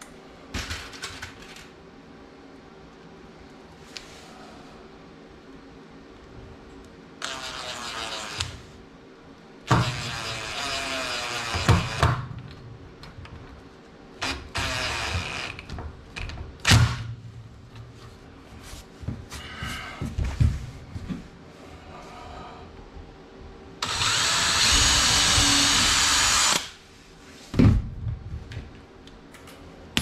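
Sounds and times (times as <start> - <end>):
cordless drill driving screws: 23.8 - 26.8.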